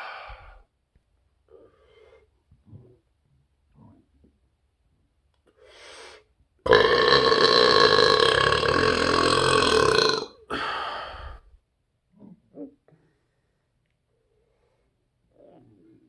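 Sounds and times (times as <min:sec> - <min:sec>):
man burping: 0:06.7 - 0:10.6.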